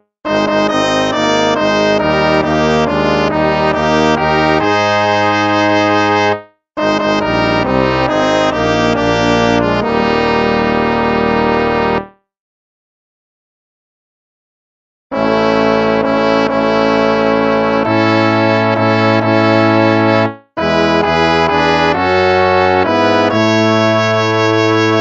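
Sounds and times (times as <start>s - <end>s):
brass instruments playing a hymn: 0.3s - 12.0s, 15.1s - 25.0s.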